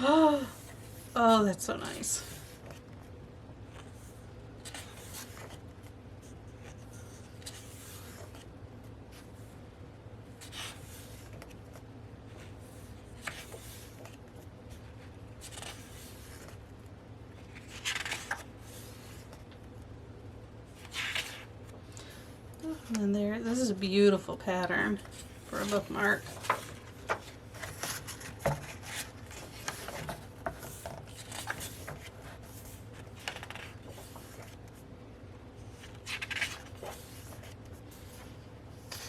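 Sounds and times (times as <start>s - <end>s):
low room hum: 0.0s - 39.0s
paper pages rustling and turning: 2.0s - 9.4s, 10.3s - 19.8s, 20.7s - 21.9s, 24.6s - 34.9s, 35.6s - 39.0s.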